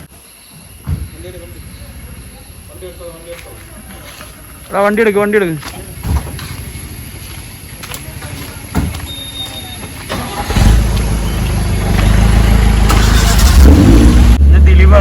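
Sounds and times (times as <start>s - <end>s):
vehicle engine pulling away: 10.1s - 15.0s.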